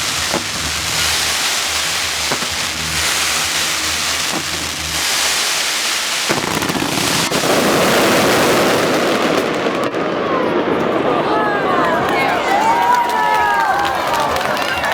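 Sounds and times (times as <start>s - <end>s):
fireworks crackling hiss: 0.0s - 9.8s
fireworks bangs: 0.0s - 14.9s.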